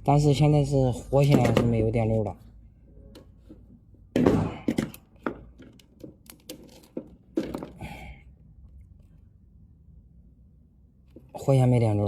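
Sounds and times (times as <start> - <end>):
knocks and clicks of handled tools: 1.2 - 1.9, 3.1 - 7.8.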